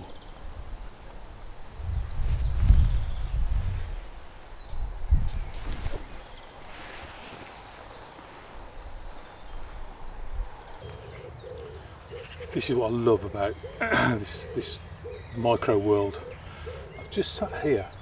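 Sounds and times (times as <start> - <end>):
wind buffeting microphone: 0.0 - 7.0, 8.4 - 11.8
soft rustles: 1.9 - 4.3, 5.1 - 9.8.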